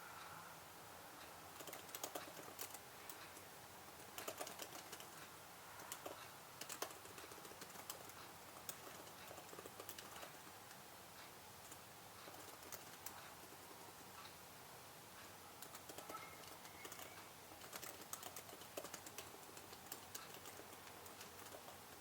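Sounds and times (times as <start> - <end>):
typing on computer keyboard: 1.5 - 10.5, 11.6 - 13.8, 15.6 - 22.0.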